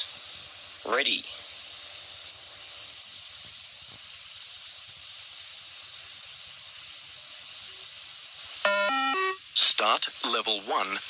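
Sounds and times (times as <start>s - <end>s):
steady audio hiss: 0.0s - 11.0s
electronic beep: 8.7s - 9.4s.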